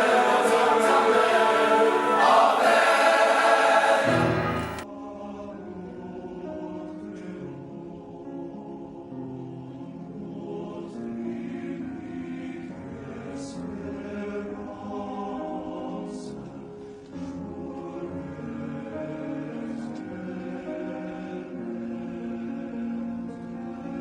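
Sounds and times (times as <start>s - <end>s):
men's chorus singing: 0.0s - 8.2s.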